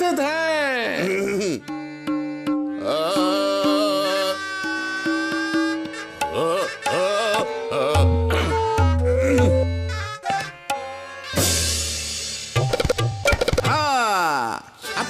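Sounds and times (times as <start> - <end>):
tabla drumming: 1.6 - 4.0, 4.6 - 14.0
sliding melody line: 2.0 - 11.8.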